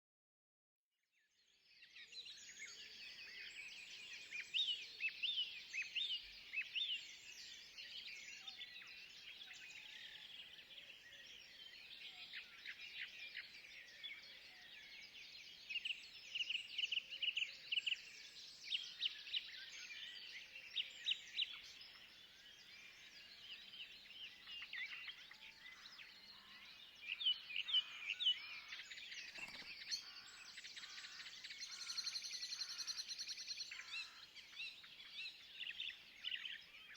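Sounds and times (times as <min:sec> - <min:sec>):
songbirds chirping and trilling: 0:01.4 - 0:36.9.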